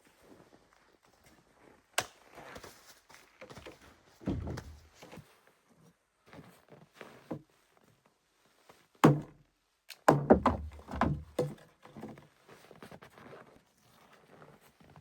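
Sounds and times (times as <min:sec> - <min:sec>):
heavy objects thudding: 0:04.2 - 0:04.9, 0:10.1 - 0:11.5.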